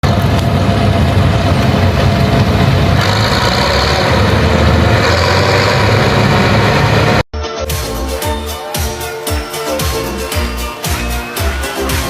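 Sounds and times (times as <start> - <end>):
diesel engine running loud: 0.0 - 7.3.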